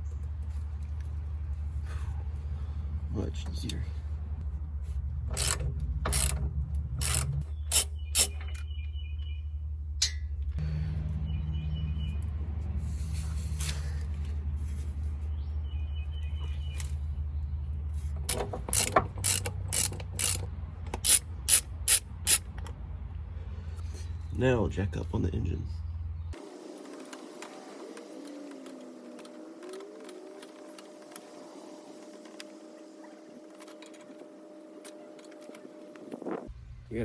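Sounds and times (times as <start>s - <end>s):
socket ratchet clicking: 5.3s - 6.4s, 7.0s - 8.4s, 18.3s - 22.5s.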